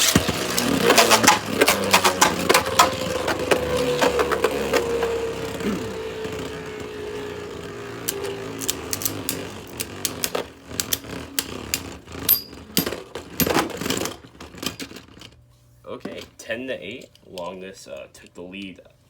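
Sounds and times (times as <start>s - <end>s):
spinning tops clacking together: 0.0s - 3.0s, 8.0s - 13.7s
spinning tops whirring: 0.0s - 14.5s.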